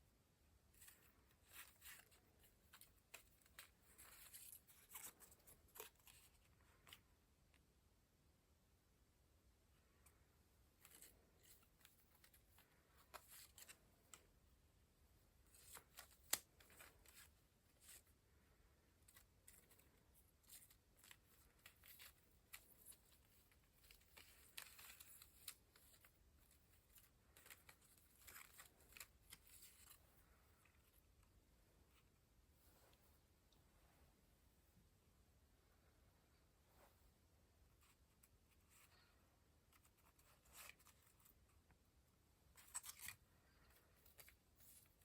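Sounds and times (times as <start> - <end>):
paper rustling: 0.7 - 7.0, 10.7 - 14.2, 15.4 - 18.2, 19.0 - 33.2.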